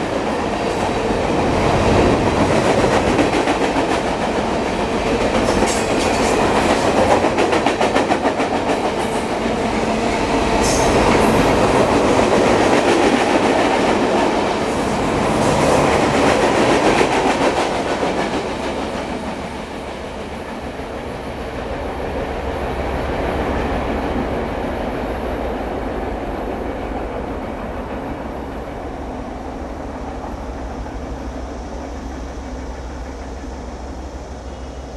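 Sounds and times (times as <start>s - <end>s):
freight train wheels clattering: 0.0s - 21.9s
low train rumble: 0.0s - 34.9s.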